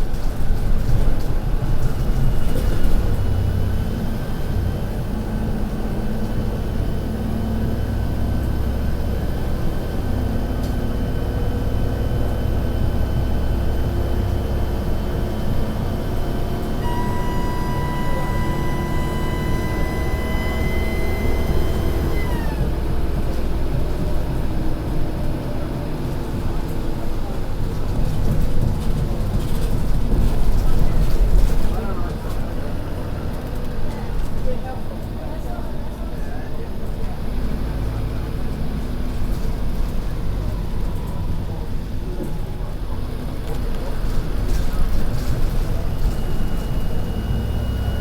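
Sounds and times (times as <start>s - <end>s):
bus diesel engine drone: 0.0s - 48.0s
loud whistle dropping in pitch: 16.8s - 22.3s
high turbo whistle: 16.8s - 22.6s.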